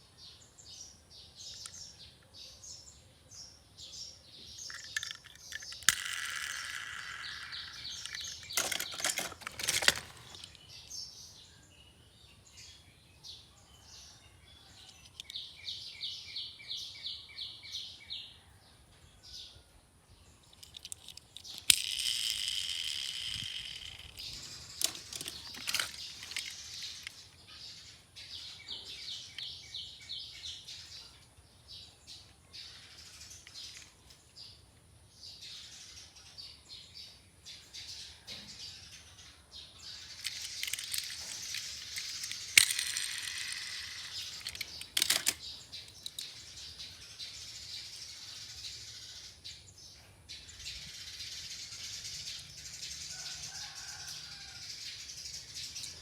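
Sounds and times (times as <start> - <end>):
birds chirping in trills: 0.0 - 18.4
sharp clicks: 40.2 - 46.4.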